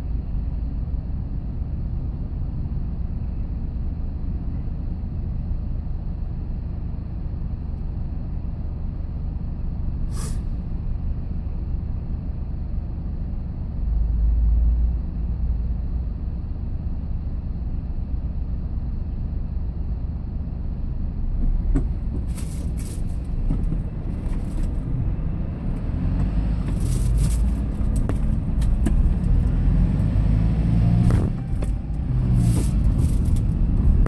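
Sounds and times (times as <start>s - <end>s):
vehicle engine and road noise: 0.0s - 34.0s
brief sharp hiss: 10.1s - 10.7s
heavier low rumble: 21.0s - 34.0s.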